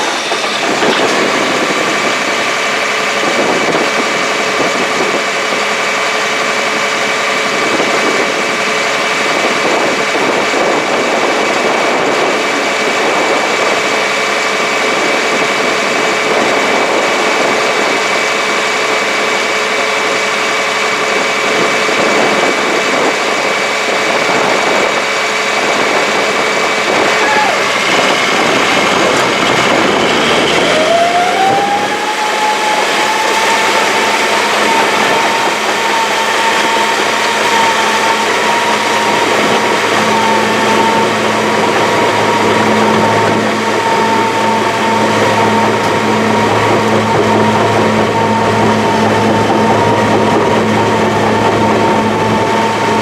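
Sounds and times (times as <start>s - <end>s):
high whine: 0.0s - 5.7s, 20.9s - 53.0s
diesel engine running: 0.0s - 53.0s.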